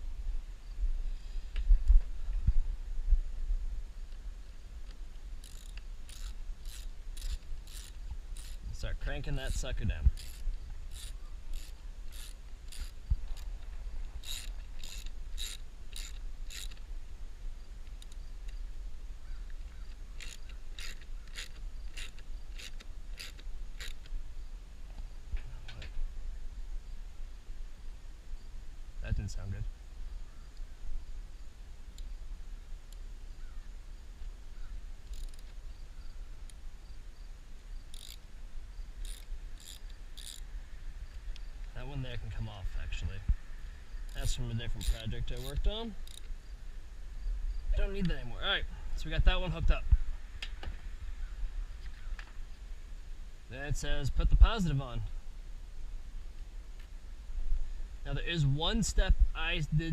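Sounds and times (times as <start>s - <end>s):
ratchet wrench clicking: 4.9s - 13.6s, 14.2s - 16.9s, 17.9s - 18.6s, 19.7s - 24.1s, 35.0s - 35.6s, 37.9s - 38.3s, 39.0s - 40.5s, 44.0s - 46.4s.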